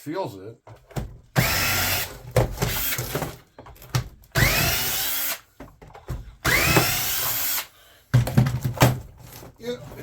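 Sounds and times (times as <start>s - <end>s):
power drill whining: 1.4s - 3.3s, 4.3s - 5.4s, 6.4s - 7.7s.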